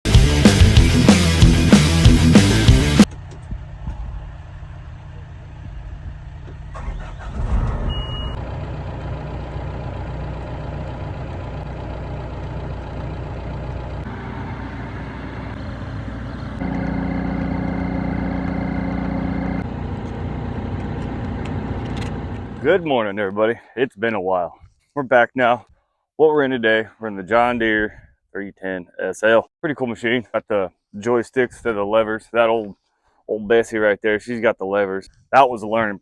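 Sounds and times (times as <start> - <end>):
diesel engine running: 0.0 - 22.9
loud pitched drone: 14.1 - 22.7.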